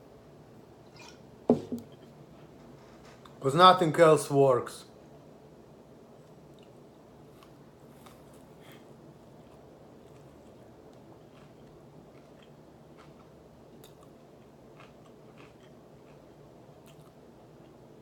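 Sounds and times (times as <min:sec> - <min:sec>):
low room hum: 0:00.0 - 0:18.0
person chewing food: 0:06.2 - 0:18.0.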